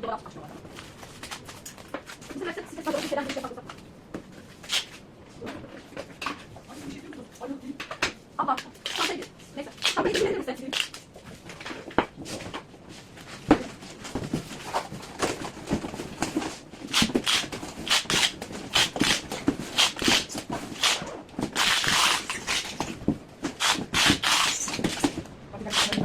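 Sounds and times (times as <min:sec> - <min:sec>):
rustling scrape: 0:08.8 - 0:26.0.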